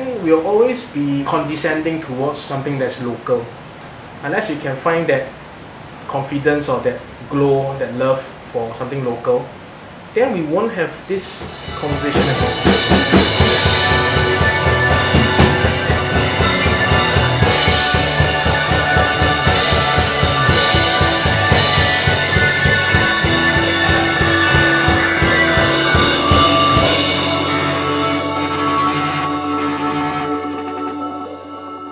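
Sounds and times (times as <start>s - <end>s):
drum hits: 11.4s - 29.3s
held guitar chords: 11.4s - 31.9s
rock band playing: 11.4s - 31.9s.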